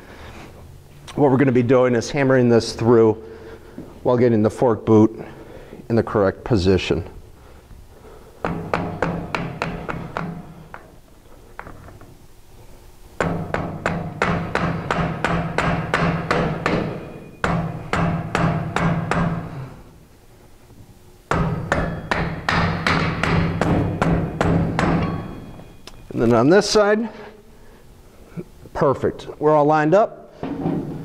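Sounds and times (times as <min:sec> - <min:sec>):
rubber mallet hammering metal: 0:08.4 - 0:10.8, 0:13.2 - 0:19.6, 0:21.3 - 0:25.8.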